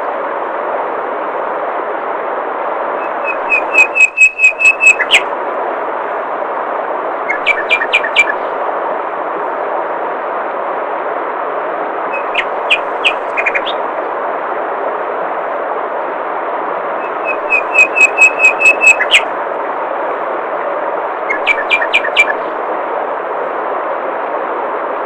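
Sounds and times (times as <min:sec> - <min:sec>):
songbird whistling: 0:03.0 - 0:05.3, 0:07.3 - 0:08.4, 0:12.1 - 0:13.8, 0:17.0 - 0:19.3, 0:21.3 - 0:22.4.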